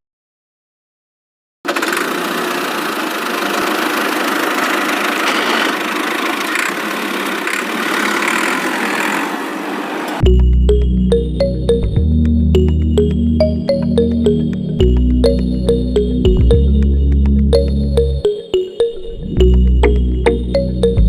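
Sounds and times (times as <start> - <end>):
small motor running: 1.7 - 9.5
music: 10.2 - 21.0.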